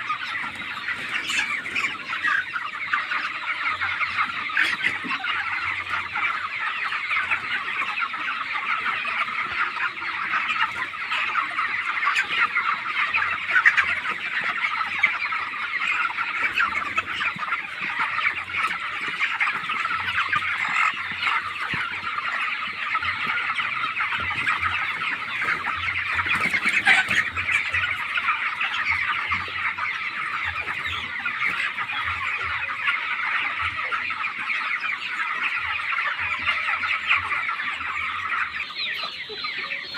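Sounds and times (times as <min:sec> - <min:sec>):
chickens chirping and clucking: 0:00.0 - 0:39.9.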